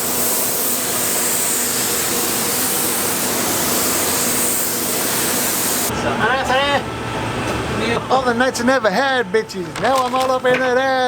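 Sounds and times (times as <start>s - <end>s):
ventilation air rush: 0.0s - 11.0s.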